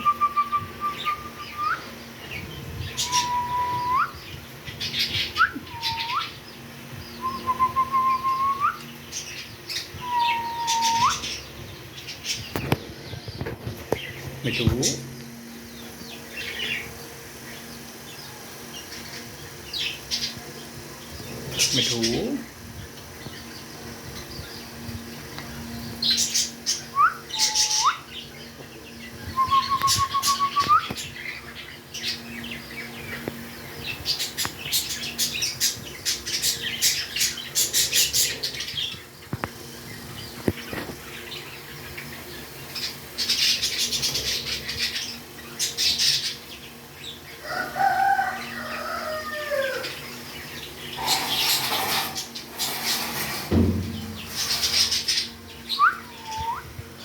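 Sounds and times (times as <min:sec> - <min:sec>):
parrot whistling and calling: 0:00.0 - 0:01.9, 0:02.9 - 0:04.3, 0:05.2 - 0:06.4, 0:07.2 - 0:08.9, 0:10.0 - 0:11.4, 0:26.8 - 0:28.2, 0:29.3 - 0:31.0, 0:55.7 - 0:56.8
low thump: 0:53.5 - 0:54.4.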